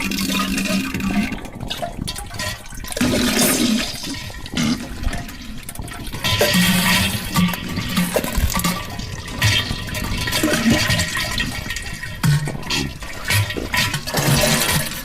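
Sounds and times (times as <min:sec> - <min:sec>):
toilet flushing: 0:00.0 - 0:15.0.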